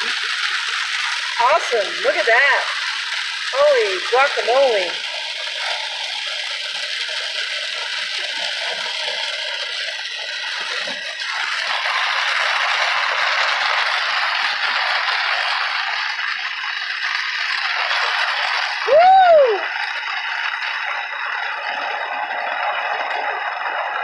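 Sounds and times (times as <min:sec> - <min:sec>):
heavy rain on car roof: 0:00.0 - 0:24.0.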